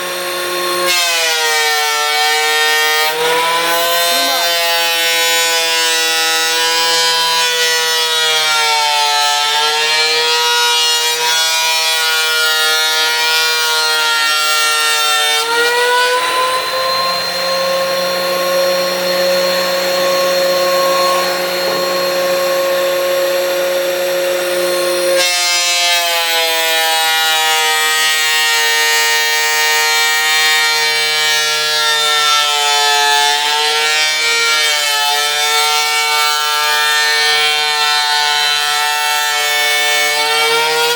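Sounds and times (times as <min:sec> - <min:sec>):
electric planer motor whine: 0:00.0 - 0:40.9.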